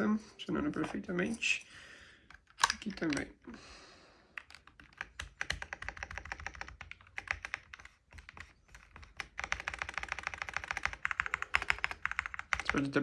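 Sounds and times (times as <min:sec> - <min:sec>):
mechanical keyboard key clicks: 0:02.4 - 0:03.3.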